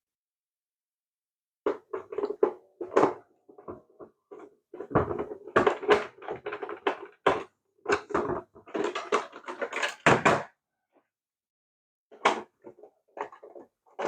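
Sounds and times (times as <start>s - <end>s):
plastic toy parts knocking: 1.7s - 10.6s.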